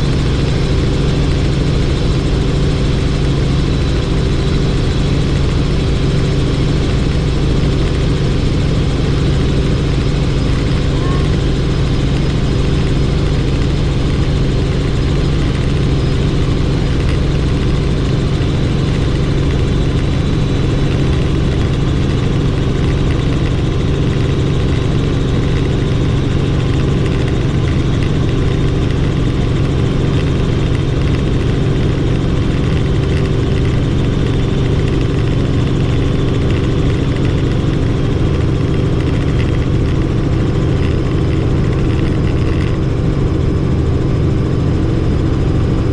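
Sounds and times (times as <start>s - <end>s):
helicopter engine and rotor drone: 0.0s - 45.9s.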